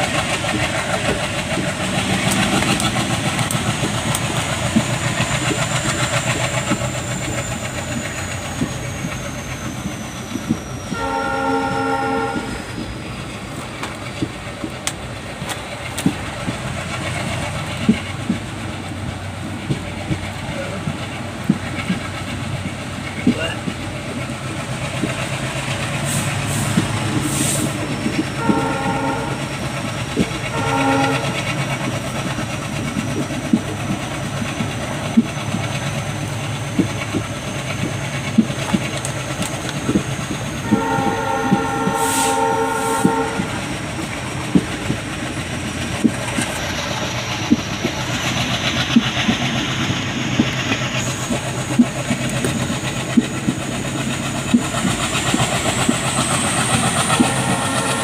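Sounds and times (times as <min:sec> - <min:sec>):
wheels clicking over rail joints: 0:00.0 - 0:42.1, 0:43.0 - 0:58.0
diesel engine running: 0:00.0 - 0:58.0
locomotive horn blasts: 0:10.9 - 0:12.7, 0:28.4 - 0:29.5, 0:30.5 - 0:31.5, 0:40.6 - 0:43.7, 0:57.2 - 0:58.0.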